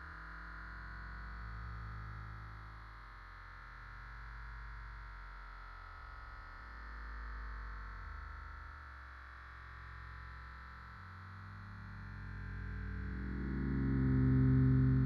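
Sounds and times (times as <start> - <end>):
soft synthesizer pad music: 11.0 - 15.0.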